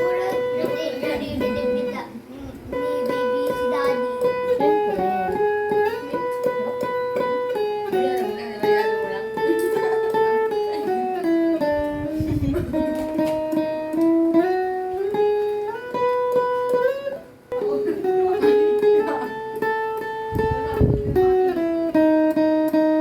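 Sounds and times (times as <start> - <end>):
guitar picked and strummed: 0.0 - 23.0.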